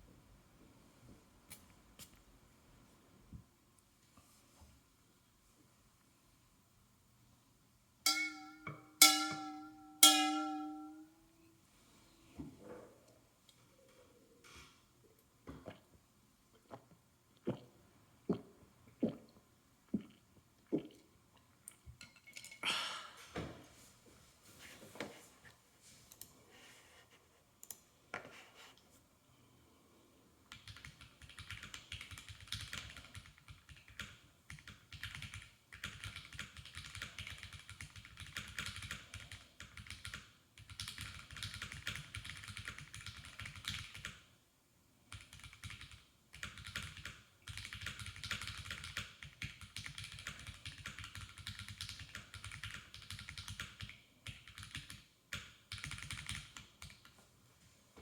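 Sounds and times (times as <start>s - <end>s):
mechanical keyboard typing: 30.5s - 44.2s, 45.1s - 57.1s.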